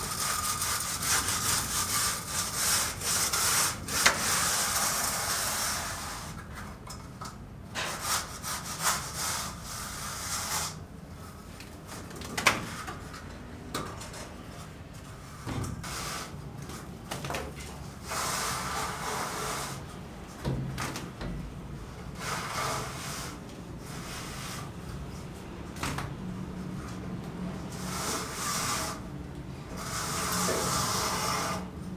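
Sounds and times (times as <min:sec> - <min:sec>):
scraping or rubbing: 0:00.0 - 0:06.4, 0:14.6 - 0:16.9, 0:18.0 - 0:19.9, 0:22.1 - 0:25.3, 0:27.7 - 0:29.1, 0:29.8 - 0:31.8.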